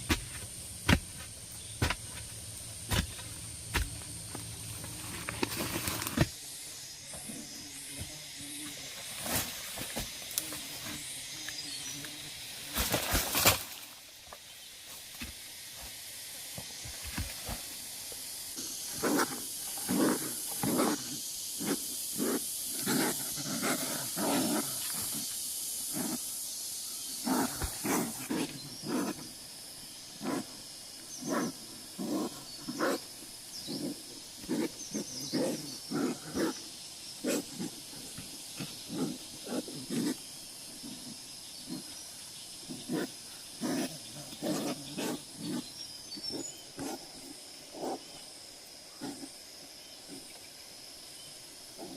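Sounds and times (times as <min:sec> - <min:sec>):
steady high hiss: 0:00.0 - 0:51.9
loud scrape or rustle: 0:05.0 - 0:06.3.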